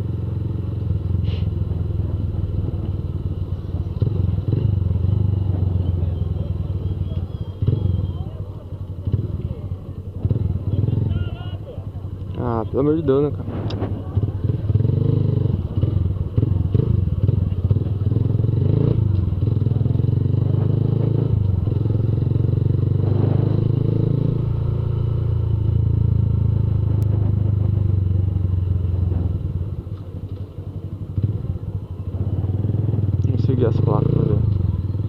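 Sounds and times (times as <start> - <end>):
motorcycle engine running: 0.0 - 35.0.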